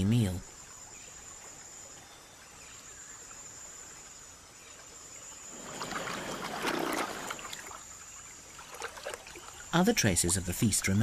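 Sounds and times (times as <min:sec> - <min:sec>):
splashing crackling water: 0:05.5 - 0:11.0.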